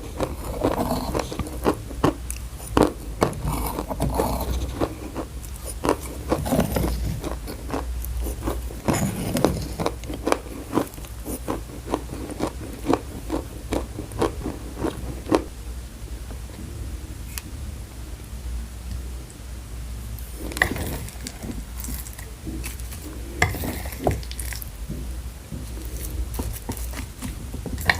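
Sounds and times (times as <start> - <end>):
chalk crunching while chewed: 0.0 - 15.5, 20.4 - 24.7, 25.7 - 27.9.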